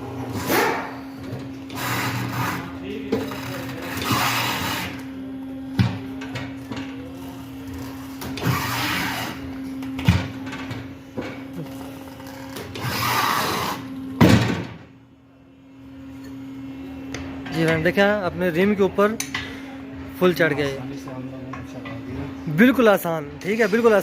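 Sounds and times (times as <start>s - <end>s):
tyre changer motor hum: 0.0s - 18.9s.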